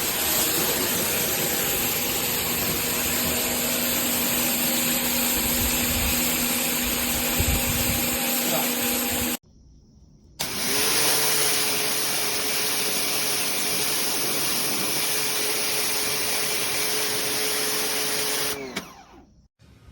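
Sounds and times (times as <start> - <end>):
loud hiss: 0.0 - 9.4
pressure washer motor whine: 0.0 - 9.4, 10.4 - 19.3.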